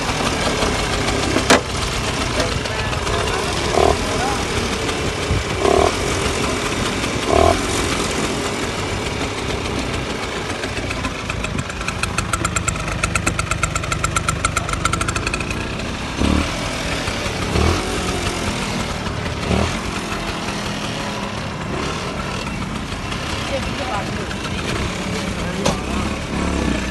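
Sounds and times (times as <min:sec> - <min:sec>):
scooter engine idling: 0:00.0 - 0:26.9.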